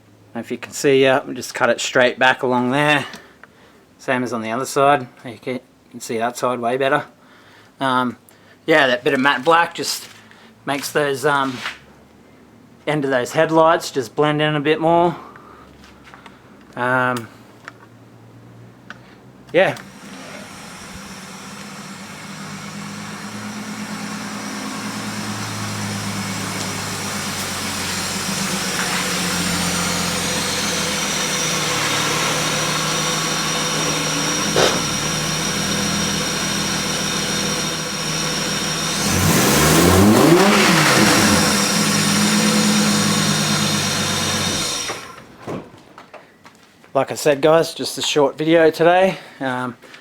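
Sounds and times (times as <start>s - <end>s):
engine revving: 19.7s - 45.4s
car engine idling: 19.8s - 45.4s.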